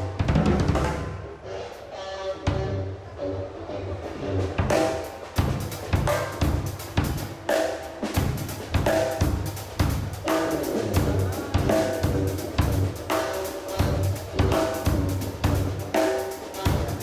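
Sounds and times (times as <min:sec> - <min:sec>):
drum kit steady beat: 0:00.0 - 0:01.2, 0:04.5 - 0:17.0
bass drum strokes: 0:04.0 - 0:17.0
snare drum strokes: 0:04.6 - 0:17.0.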